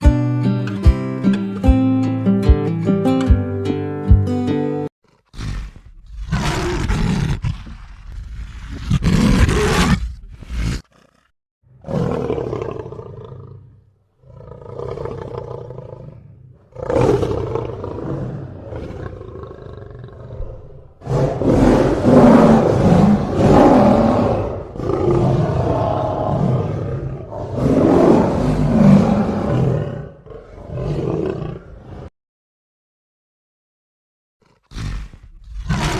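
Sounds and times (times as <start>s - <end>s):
lion roaring: 5.1s - 32.1s, 34.4s - 35.9s.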